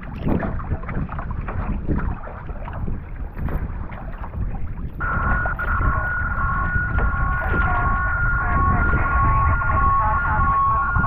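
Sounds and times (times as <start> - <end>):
paddle strokes splashing: 0.0 - 9.5
wind buffeting microphone: 0.0 - 11.0
steady two-pitch high tone: 5.0 - 11.0.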